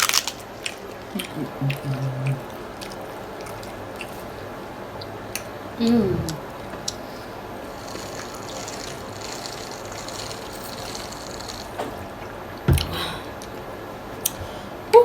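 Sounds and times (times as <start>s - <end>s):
liquid pouring into a cup: 7.6s - 12.0s
low thump: 12.7s - 13.1s.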